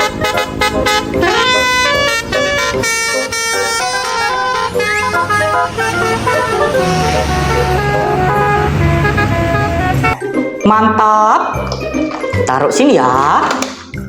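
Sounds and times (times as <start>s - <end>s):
multi-tone electronic horn tune: 0.0s - 10.2s.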